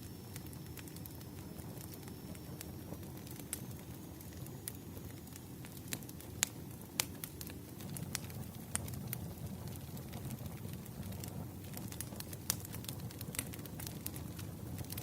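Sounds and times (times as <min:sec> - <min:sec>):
fire crackling and popping: 0:00.0 - 0:15.0
wood fire rumbling: 0:00.1 - 0:15.0.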